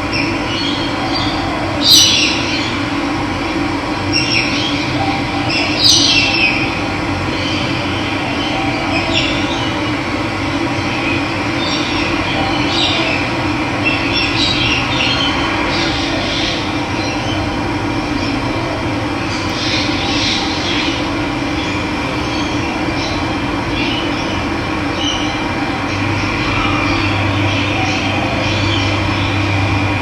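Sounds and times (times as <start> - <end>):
birds chirping: 0.1 - 2.8, 4.0 - 10.0.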